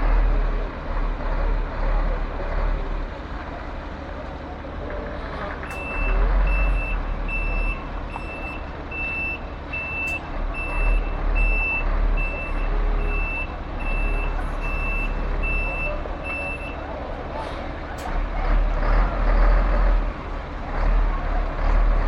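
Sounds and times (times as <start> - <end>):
truck engine rumble: 0.0 - 22.0
reversing alarm beeping: 5.8 - 16.8.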